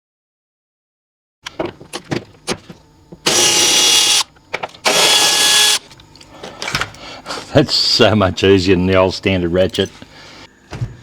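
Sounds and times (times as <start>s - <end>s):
electric ratchet spinning: 3.2s - 5.8s.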